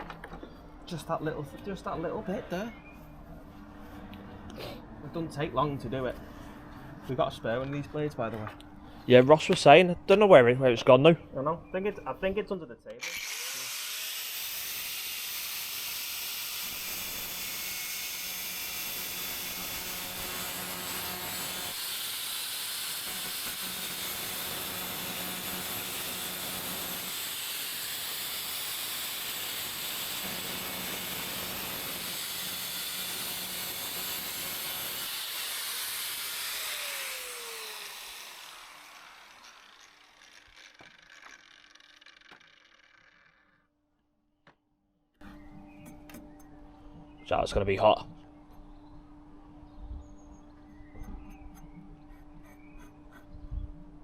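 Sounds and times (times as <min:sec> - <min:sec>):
angle grinder grinding steel: 0:13.0 - 0:43.6
grinder winding down whine: 0:13.0 - 0:43.6.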